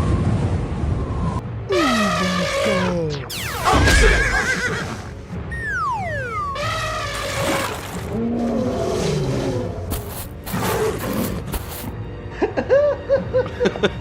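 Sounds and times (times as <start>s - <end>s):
cartoon background music: 1.4s - 14.0s
quick bouncy tones: 5.5s - 7.7s
growl-like noise: 8.0s - 11.3s.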